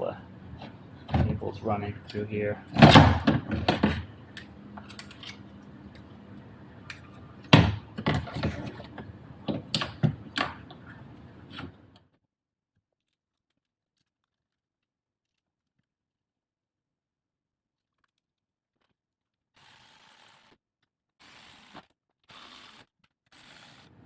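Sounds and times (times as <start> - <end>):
bike parts clicking and rattling: 2.1 - 6.1.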